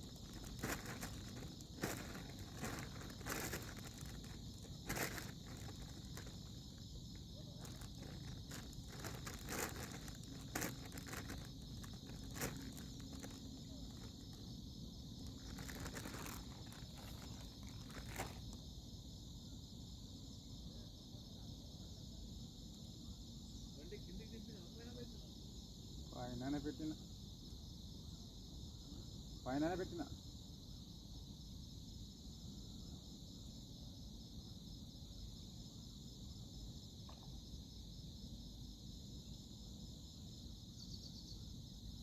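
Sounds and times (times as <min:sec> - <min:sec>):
high-pitched insect chorus: 0:00.0 - 0:42.0.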